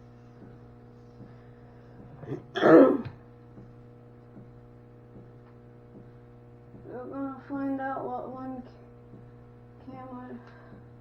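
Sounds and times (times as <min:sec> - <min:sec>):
steady low hum: 0:00.0 - 0:11.0
woman clearing throat: 0:02.2 - 0:03.2.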